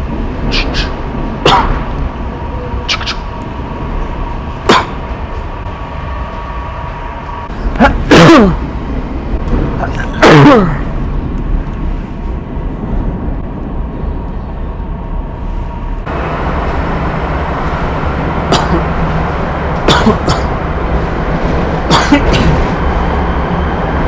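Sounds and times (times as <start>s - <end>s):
metro train carriage rumble: 0.0s - 24.0s
fake coughs: 1.4s - 1.8s, 4.6s - 5.0s, 7.8s - 8.6s, 18.5s - 18.9s, 19.9s - 20.5s, 21.9s - 22.6s.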